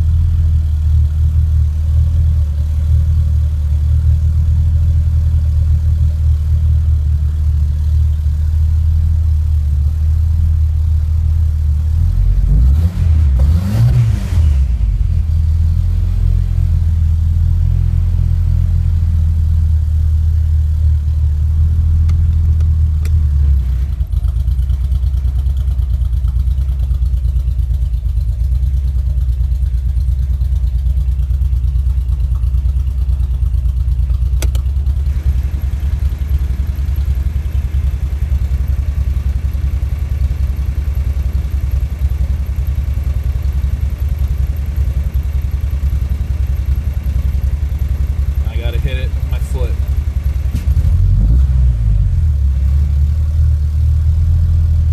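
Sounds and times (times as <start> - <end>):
engine running with misfire: 19.8 - 53.4.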